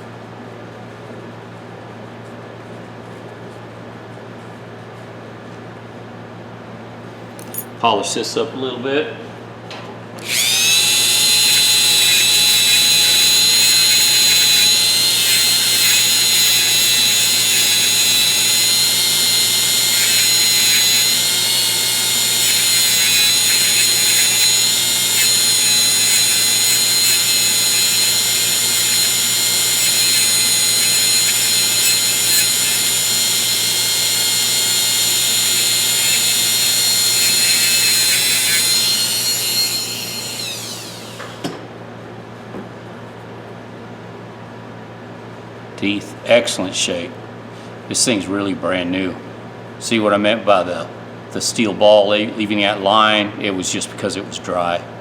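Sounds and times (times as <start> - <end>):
electric polishing tool running: 10.2 - 41.4.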